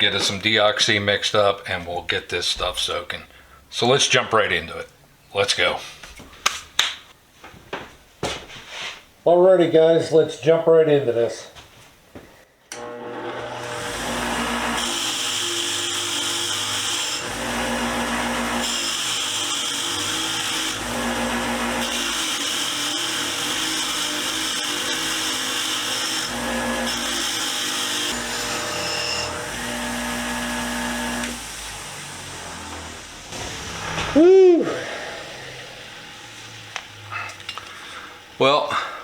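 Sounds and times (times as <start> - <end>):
wire wheel grinding metal: 12.8 - 34.2.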